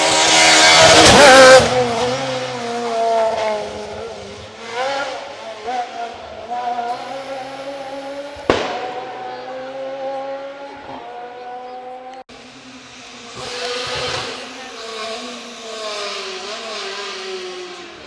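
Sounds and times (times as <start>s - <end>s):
rally car engine revving: 0.0s - 18.0s
sharp bang: 8.4s - 9.5s
car passing with tyre hiss: 12.3s - 18.0s.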